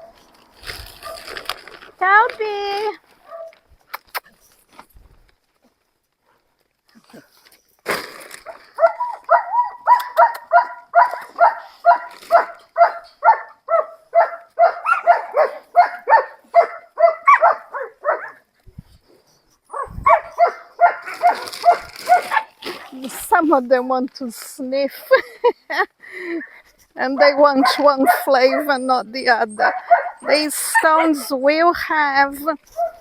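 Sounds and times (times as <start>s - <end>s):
dog barking rapidly: 8.8s - 18.4s, 19.7s - 22.6s, 27.2s - 28.8s, 29.5s - 31.2s, 32.8s - 33.0s.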